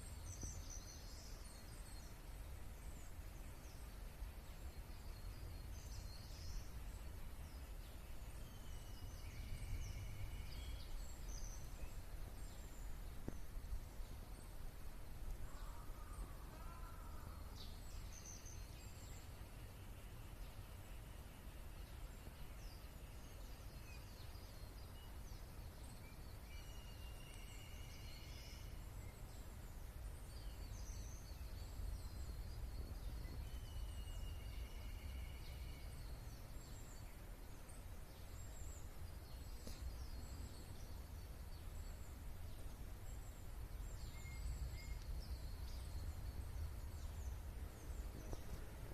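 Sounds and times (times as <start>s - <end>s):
birds chirping: 15.3s - 48.9s
long high bird call: 15.4s - 17.6s.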